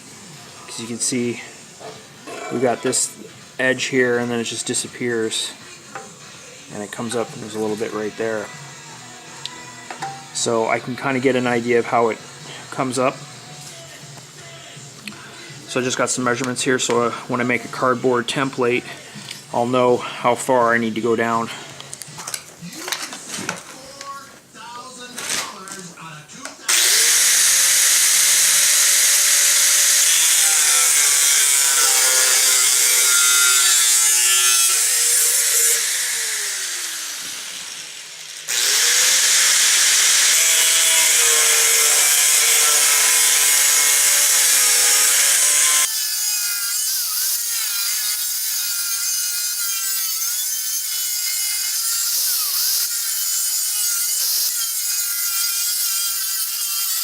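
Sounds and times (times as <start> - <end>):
power tool cutting sheet steel: 26.7 - 57.0.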